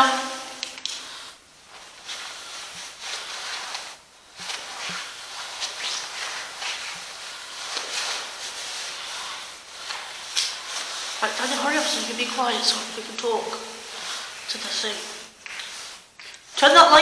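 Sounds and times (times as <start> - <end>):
steady high hiss: 0.0 - 17.0.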